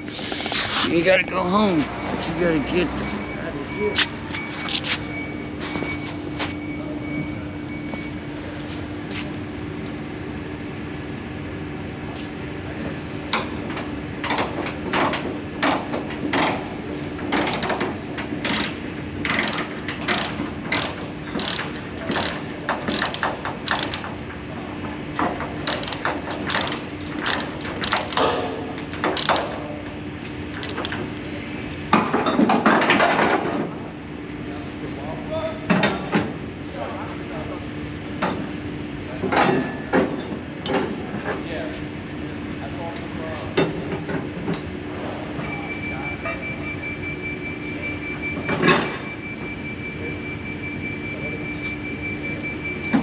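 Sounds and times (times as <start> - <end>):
rushing scrape: 0.0 - 2.4
ratchet clicking: 17.3 - 24.2, 25.6 - 28.3, 29.0 - 29.6.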